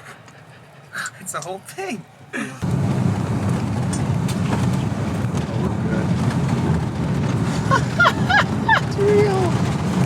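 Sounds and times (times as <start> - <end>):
steady low rumbling: 2.3 - 10.0.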